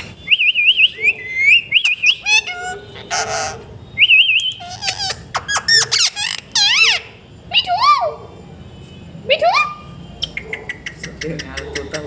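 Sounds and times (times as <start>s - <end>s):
parrot whistling and chirping: 0.2s - 7.2s
parrot squawk: 0.9s - 7.2s.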